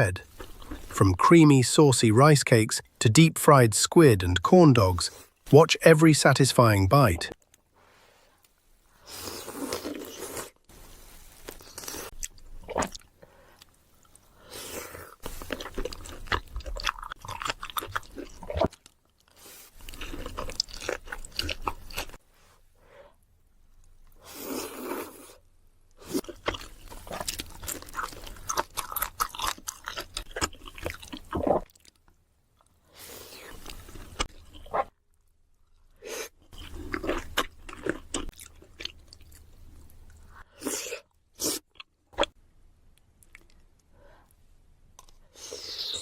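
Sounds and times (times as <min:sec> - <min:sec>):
crunchy chewing of fried food: 0:00.2 - 0:01.0, 0:09.0 - 0:22.2, 0:23.7 - 0:44.4
soft wet chewing: 0:11.3 - 0:22.2, 0:23.7 - 0:44.4.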